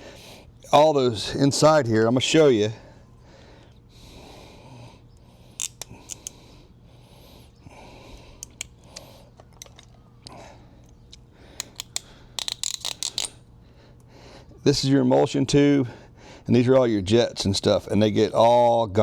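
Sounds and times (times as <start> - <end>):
faint steady hum: 0.0 - 19.0
clicks of plastic parts: 5.6 - 6.4, 8.4 - 10.0, 10.8 - 13.4.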